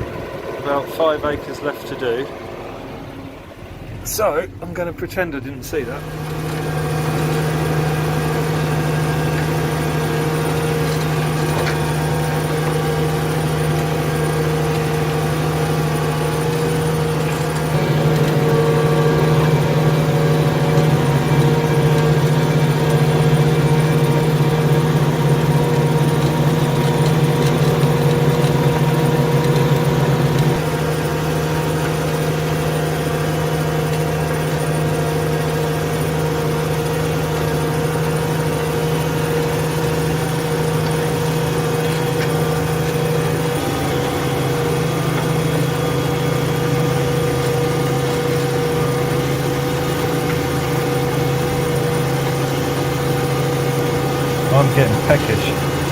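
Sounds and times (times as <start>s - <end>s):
tractor engine running under load: 0.0s - 55.9s.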